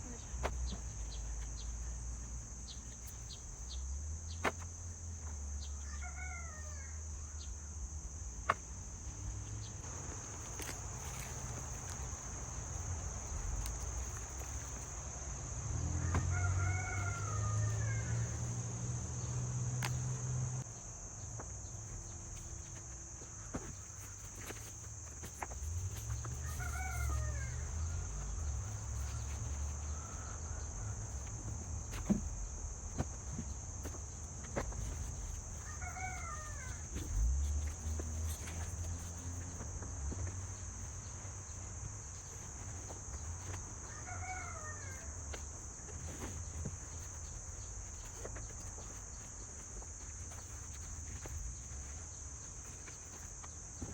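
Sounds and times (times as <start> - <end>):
insects droning: 0.0 - 53.9
rooster crowing: 5.8 - 7.1, 15.8 - 19.2, 26.1 - 31.4, 35.6 - 37.2, 43.8 - 45.4.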